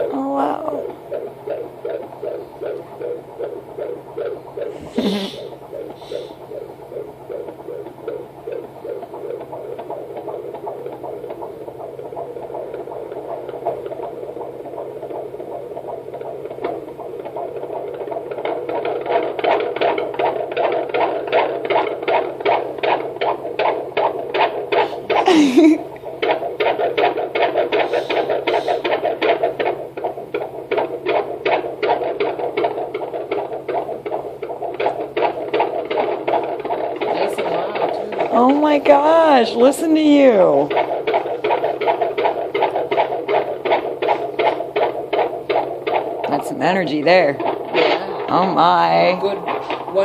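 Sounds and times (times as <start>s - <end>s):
fetal heartbeat whooshing pulse: 0.0s - 50.0s
steady monitor hum: 0.0s - 50.0s.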